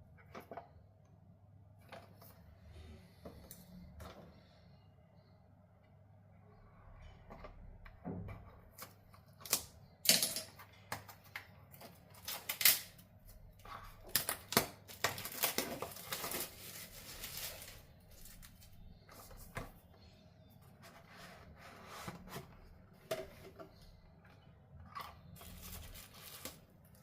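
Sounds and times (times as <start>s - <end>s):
packaging being handled: 14.0s - 19.7s, 25.4s - 27.0s.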